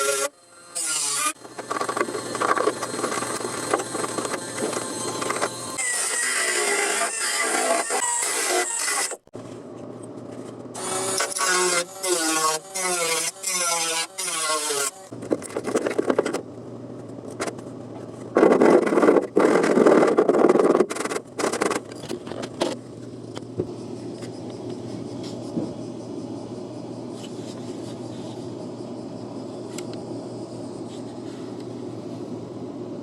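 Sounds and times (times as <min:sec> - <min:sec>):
steady low hum: 0:15.1 - 0:33.0.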